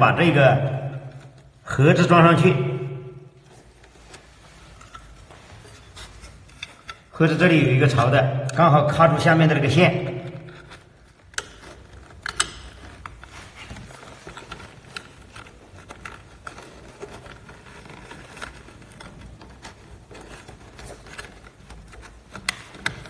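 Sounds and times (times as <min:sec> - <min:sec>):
plastic cover clicking and rattling: 0:10.4 - 0:23.0.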